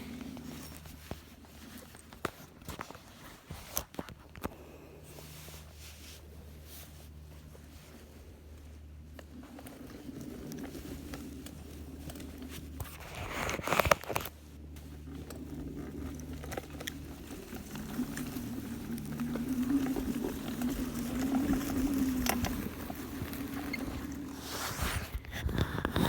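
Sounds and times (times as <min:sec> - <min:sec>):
loud rustle: 0:05.0 - 0:26.0
electric motors humming: 0:06.2 - 0:26.0.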